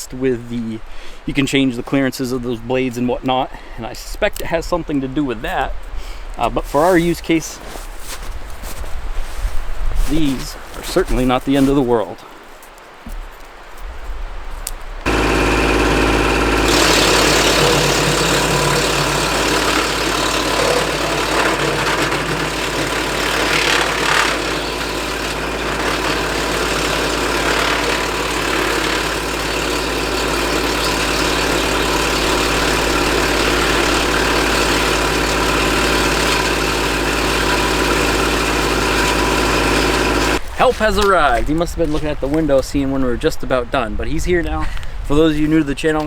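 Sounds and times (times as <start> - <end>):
tractor diesel engine: 15.0 - 41.0
wood chipper running: 15.0 - 41.0.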